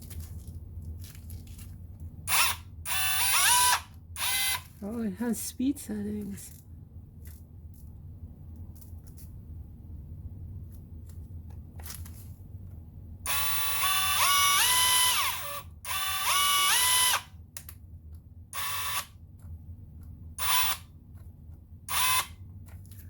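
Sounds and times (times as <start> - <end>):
impact wrench motor whine: 2.3 - 4.7, 13.3 - 17.3, 18.6 - 19.1, 20.4 - 20.8, 21.9 - 22.4.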